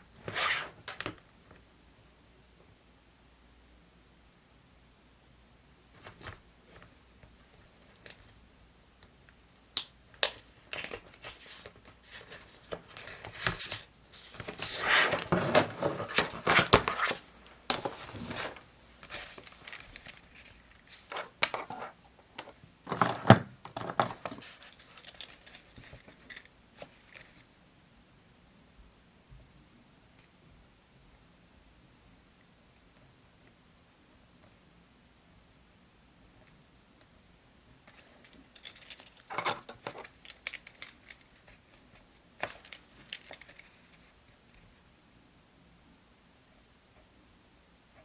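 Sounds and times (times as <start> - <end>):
paper rustling and crinkling: 10.3 - 21.9, 22.9 - 27.5.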